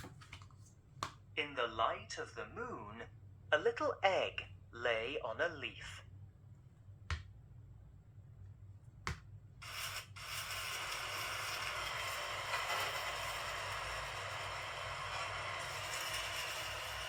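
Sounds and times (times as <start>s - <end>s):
pen tapping on book page: 7.1s - 7.3s, 9.0s - 9.3s.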